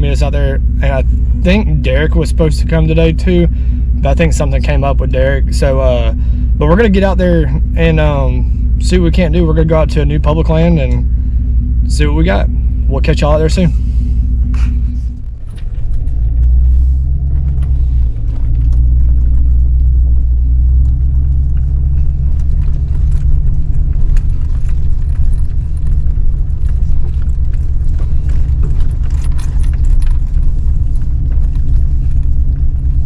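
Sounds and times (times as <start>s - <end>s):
vehicle road rumble: 0.0s - 33.0s
light rattles and clicks: 20.7s - 33.0s.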